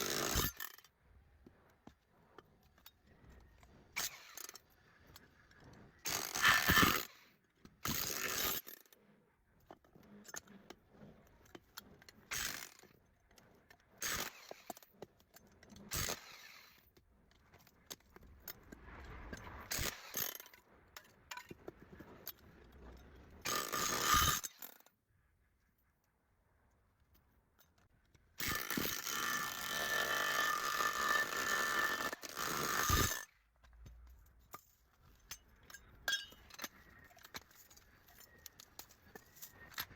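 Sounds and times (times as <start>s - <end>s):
tools clanking on metal: 33.6s - 39.9s.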